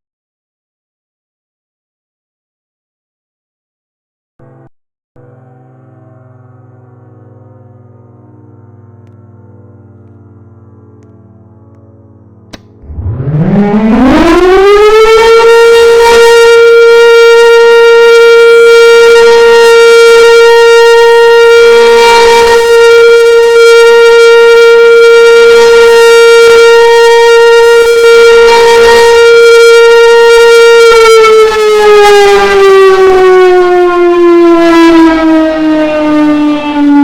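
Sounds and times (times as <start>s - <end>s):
siren winding: 12.5s - 33.0s.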